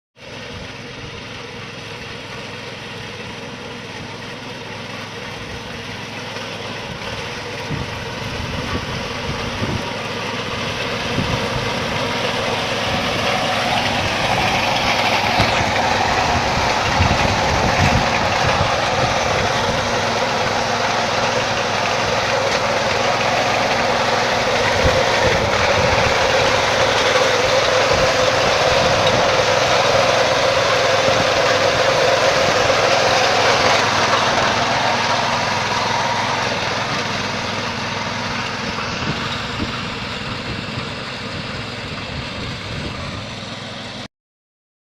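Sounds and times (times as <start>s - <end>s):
harvester engine running: 0.2s - 44.1s.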